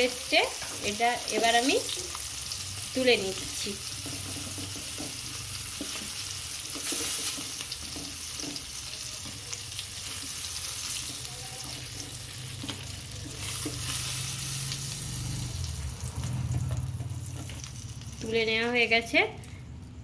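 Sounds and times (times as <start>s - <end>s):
prawns sizzling in hot oil: 0.0s - 19.1s
spatula scraping a pan: 3.8s - 15.0s.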